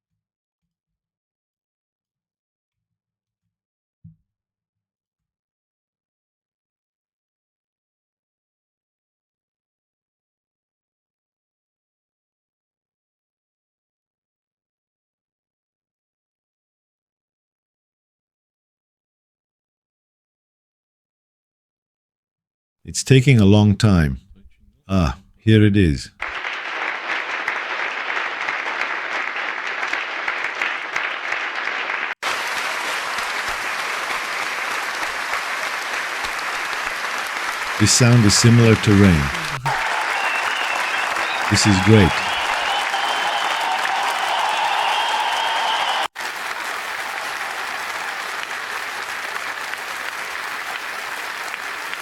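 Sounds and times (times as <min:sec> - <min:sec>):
dense rain-like patter: 0:31.8 - 0:37.5.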